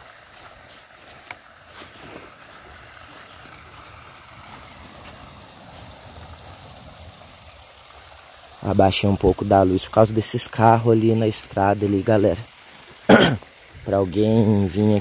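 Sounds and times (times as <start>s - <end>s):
distant road traffic: 2.2s - 8.6s.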